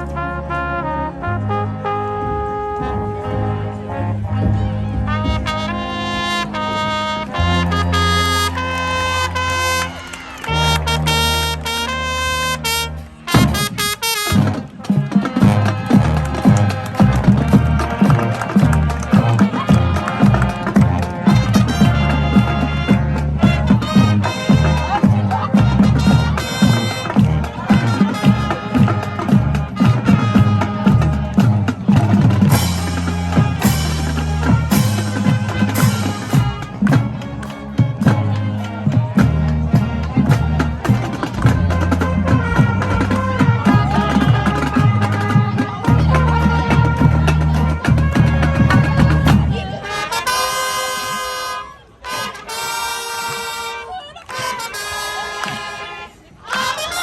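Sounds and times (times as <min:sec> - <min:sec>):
brass section playing held chords: 0:00.0 - 0:57.0
instrumental music with drums: 0:04.3 - 0:49.8.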